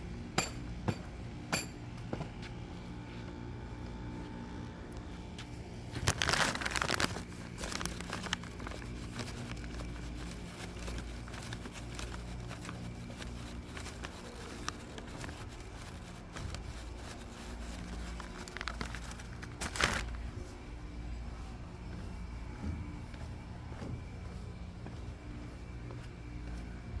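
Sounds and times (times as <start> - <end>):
steady low hum: 0.0 - 27.0
plastic packaging crinkling: 5.9 - 20.4.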